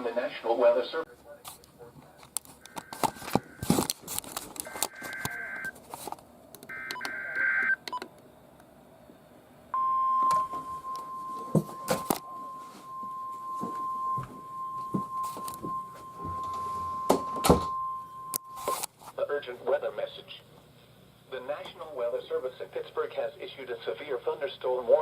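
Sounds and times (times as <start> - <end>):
sharp clicks: 2.3 - 3.2
steady warning alarm tone: 4.6 - 5.8, 6.7 - 8.0, 9.7 - 18.7.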